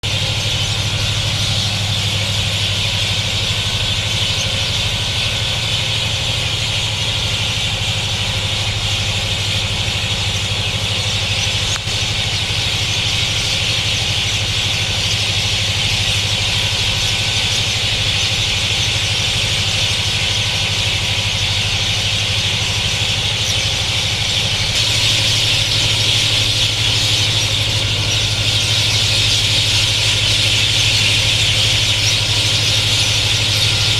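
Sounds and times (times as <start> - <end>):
many birds chattering: 0.0 - 33.9
steady low hum: 24.1 - 33.9.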